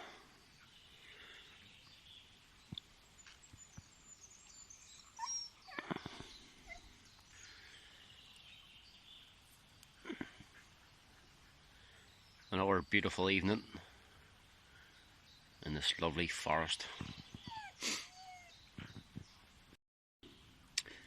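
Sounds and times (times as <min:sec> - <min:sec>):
faint high animal calls: 0:17.4 - 0:18.6.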